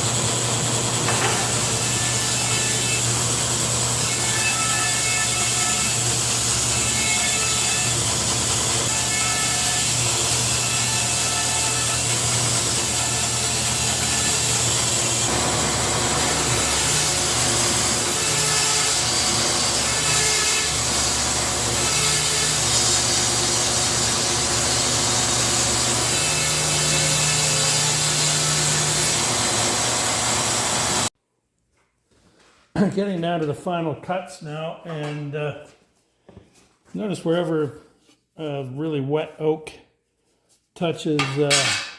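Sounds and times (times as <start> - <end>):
thickness planer whirring: 0.0 - 31.1.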